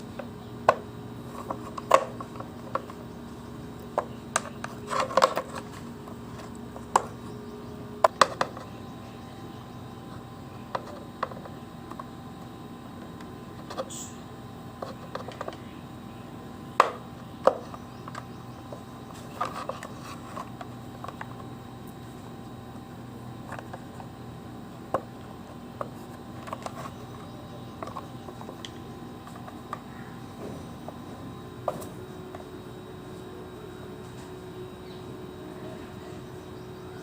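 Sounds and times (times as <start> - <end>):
steady low hum: 0.0 - 37.0
plastic parts clicking and knocking: 0.2 - 3.0, 3.9 - 7.2, 8.0 - 8.7, 10.7 - 12.1, 14.8 - 15.7, 16.8 - 21.5, 25.8 - 31.0.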